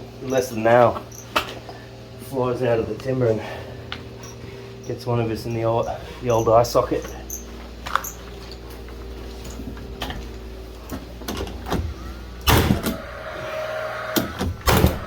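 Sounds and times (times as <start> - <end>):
steady low hum: 0.0 - 15.0
motor whir: 11.9 - 15.0
nail gun bang: 12.5 - 13.0, 14.2 - 15.0.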